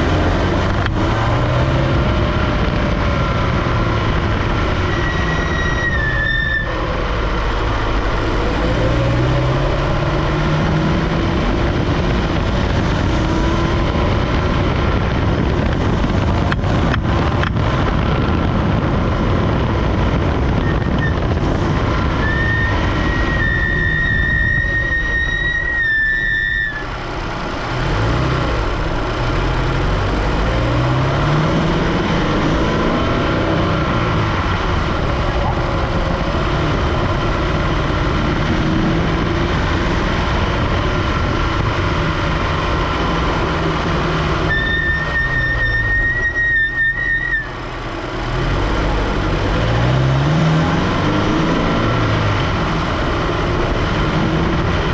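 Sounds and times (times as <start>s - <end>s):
car engine revving: 0.0s - 54.9s
steady high whistle: 22.2s - 26.9s, 44.5s - 47.6s.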